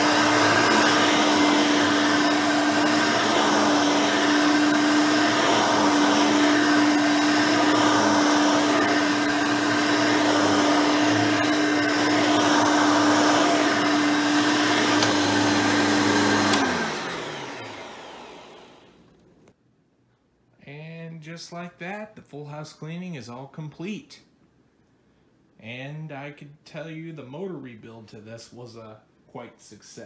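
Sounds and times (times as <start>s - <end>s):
upright vacuum motor humming: 0.0s - 19.1s.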